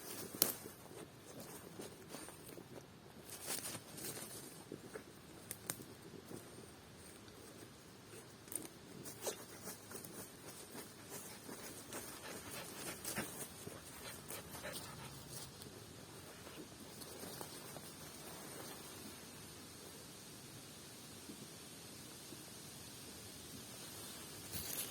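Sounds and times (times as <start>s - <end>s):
soft clicks and rustles: 0.0s - 19.2s, 23.9s - 24.9s
dogs panting: 10.8s - 15.6s.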